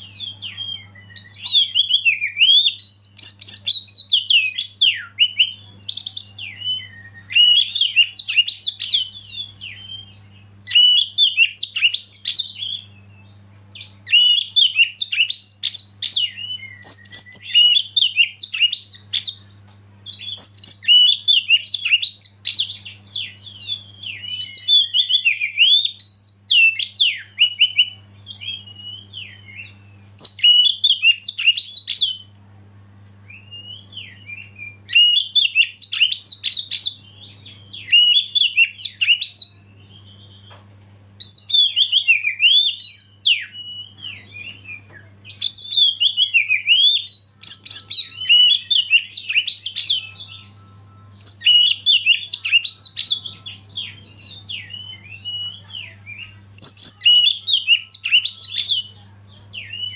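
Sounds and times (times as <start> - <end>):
bird singing whistles and trills: 0.0 - 32.2, 33.2 - 59.9
low steady hum: 0.0 - 59.9.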